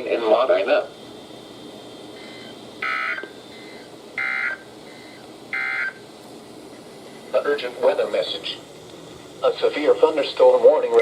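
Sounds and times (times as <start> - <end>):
faint radio hiss: 0.0 - 11.0
digital data tone bursts: 2.2 - 6.0.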